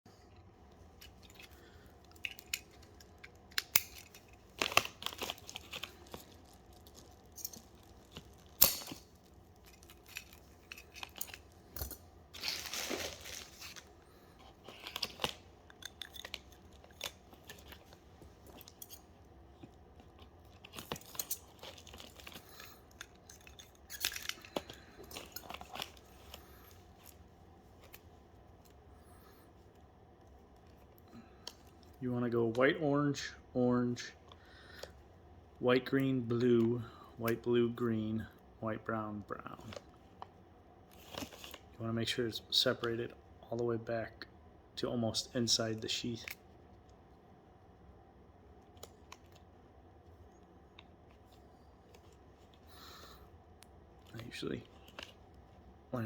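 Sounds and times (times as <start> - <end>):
wires rustling: 0.6 - 32.8, 48.7 - 56.0.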